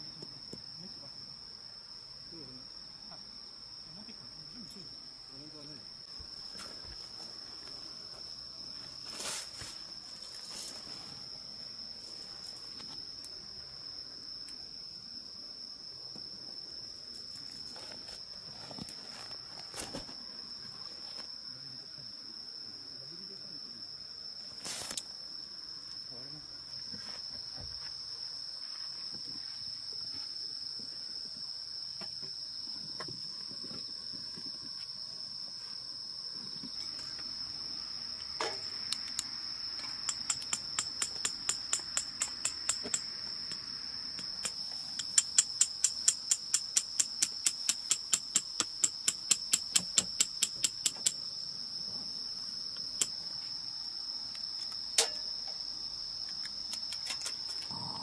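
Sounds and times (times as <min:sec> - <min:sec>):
crickets trilling: 0:00.0 - 0:58.0
sharp evenly spaced knocks: 0:40.1 - 0:43.6, 0:44.2 - 0:51.2.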